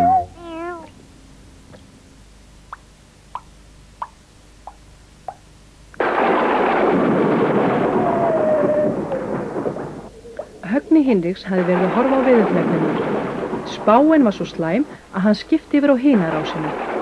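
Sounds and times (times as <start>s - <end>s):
thunderclap and rumbling storm: 6.0s - 14.8s.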